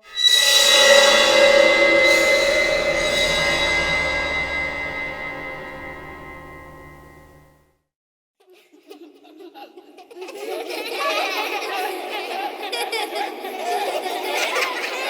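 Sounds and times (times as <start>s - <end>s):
loud metallic crash ringing: 0.0s - 7.4s
low rumble: 0.1s - 7.4s.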